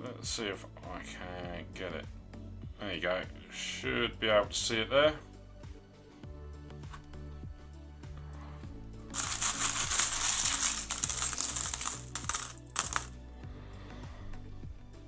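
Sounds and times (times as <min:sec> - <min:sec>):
soft background music: 0:00.0 - 0:15.0
coins clinking and jingling: 0:09.1 - 0:13.2
coins rattling: 0:09.1 - 0:13.2.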